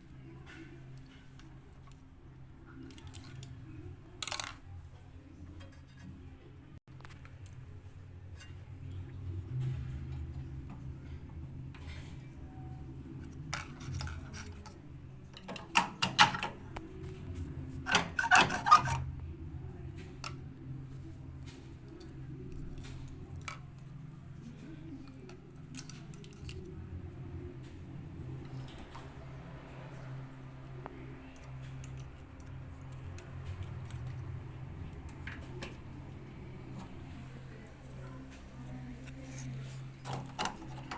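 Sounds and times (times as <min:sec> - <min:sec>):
steady low hum: 0:16.4 - 0:40.9
metal parts rattling: 0:17.8 - 0:19.1.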